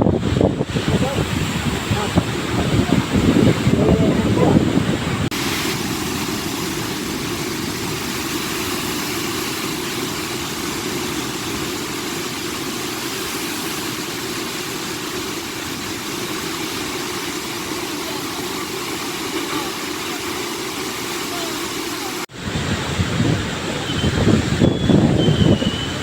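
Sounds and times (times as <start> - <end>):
gusty rumble: 0.0 - 12.6, 22.3 - 26.0
waterfall roaring: 0.0 - 26.0.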